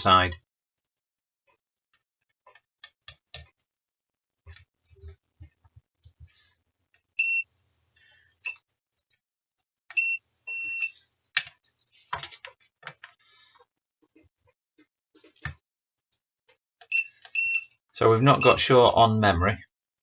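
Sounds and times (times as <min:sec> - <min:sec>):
multimeter continuity beep: 0:16.9 - 0:17.7, 0:18.4 - 0:18.6.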